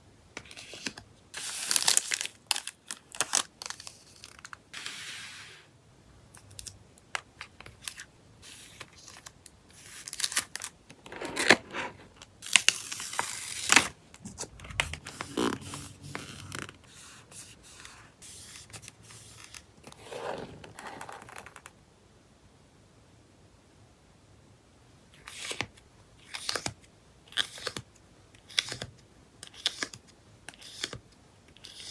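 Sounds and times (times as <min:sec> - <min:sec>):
plastic sleeves crinkling: 0:19.8 - 0:21.7.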